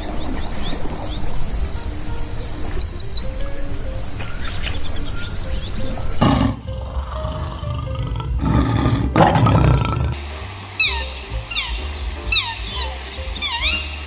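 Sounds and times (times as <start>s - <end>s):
background music: 0.0s - 14.0s
big cat roaring: 6.2s - 10.2s.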